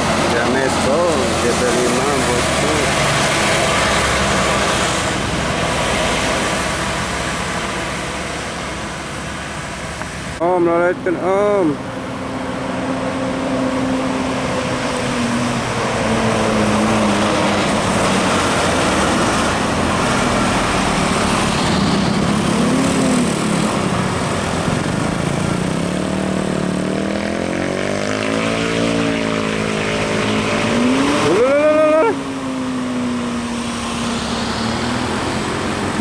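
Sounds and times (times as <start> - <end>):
loud rushing noise: 0.0 - 27.0
bus engine running: 0.0 - 28.4, 29.2 - 36.0.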